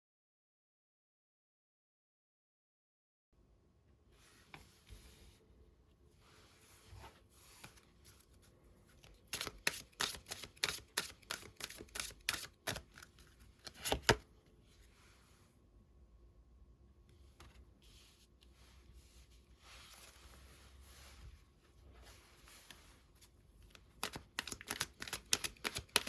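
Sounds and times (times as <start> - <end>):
cards sliding and rustling: 6.6 - 14.2, 17.4 - 26.0
cards snapping and tapping: 9.4 - 14.2, 23.9 - 26.0.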